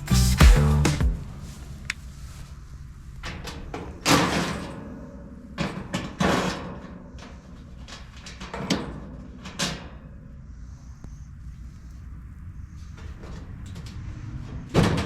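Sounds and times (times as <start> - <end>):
steady low rumble: 0.0 - 3.2.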